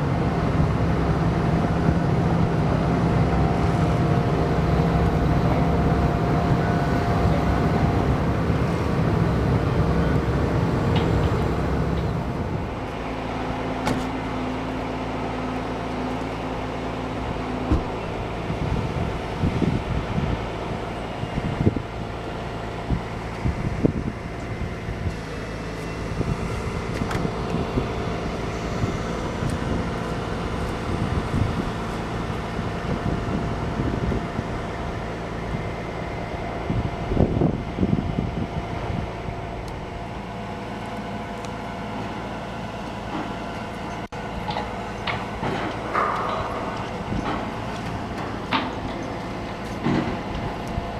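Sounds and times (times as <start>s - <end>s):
engine running: 0.0s - 50.9s
metal knocks and clanks: 44.0s - 50.6s.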